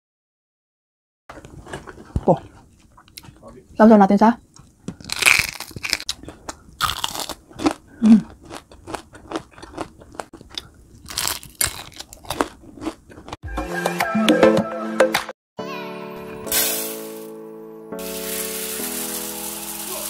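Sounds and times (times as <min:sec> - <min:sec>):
crunchy chewing of fried food: 0:01.3 - 0:03.5, 0:04.5 - 0:13.4
music: 0:13.4 - 0:20.0.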